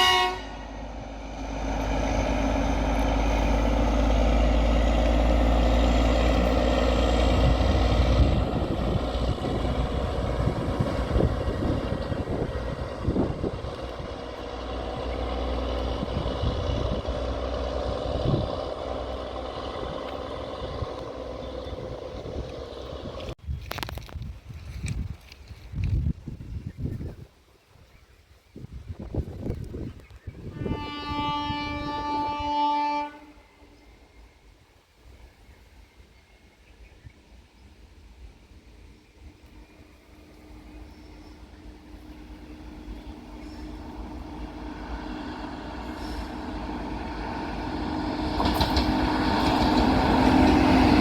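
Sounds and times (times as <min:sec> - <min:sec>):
train passing with rumble: 0:00.0 - 0:23.4, 0:28.8 - 0:51.0
train wheel knocks and clatter: 0:48.2 - 0:51.0.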